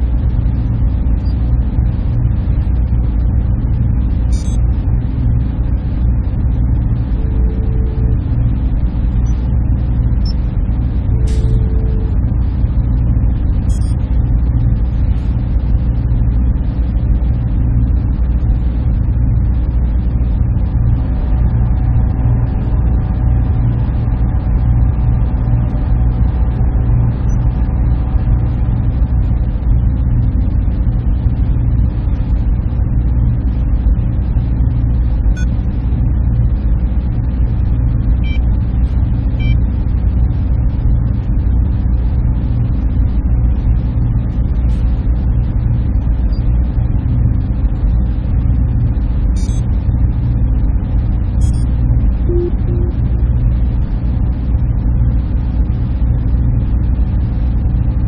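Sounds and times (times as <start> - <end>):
cooling fans droning: 0.0 - 58.0
faint steady tones: 6.8 - 12.6, 52.3 - 53.2.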